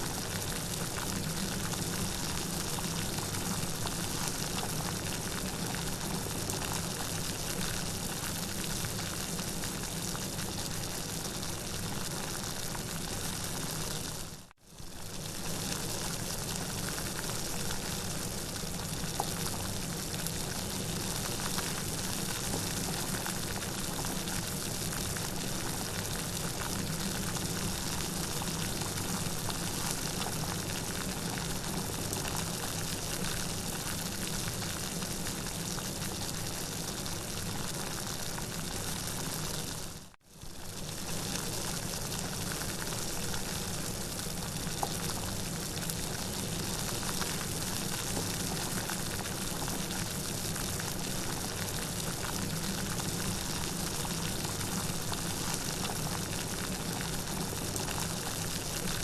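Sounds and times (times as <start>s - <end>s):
steady rain falling: 16.2s - 59.0s.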